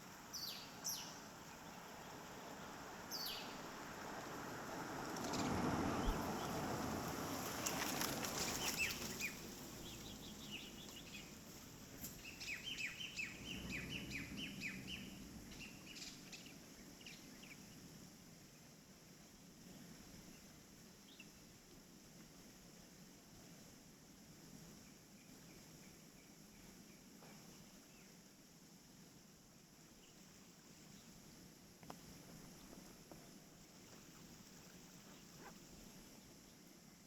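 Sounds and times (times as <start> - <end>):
wild birds chirping: 0.0 - 17.9.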